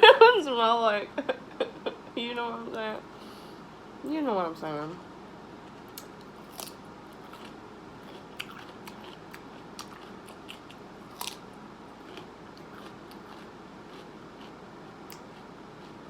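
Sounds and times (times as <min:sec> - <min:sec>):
person chewing: 0:05.8 - 0:16.0.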